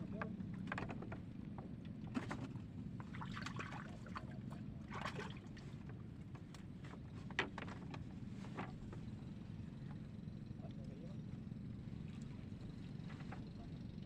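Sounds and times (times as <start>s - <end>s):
water sloshing and splashing: 1.8s - 6.3s.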